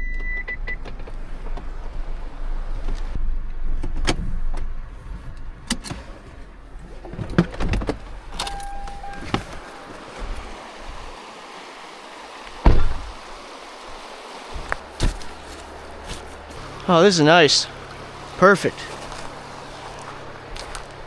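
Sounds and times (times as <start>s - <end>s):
car rumbling over rough ground: 0.0s - 21.0s
knocks and rattles: 12.6s - 13.4s
loud thump: 12.6s - 13.4s.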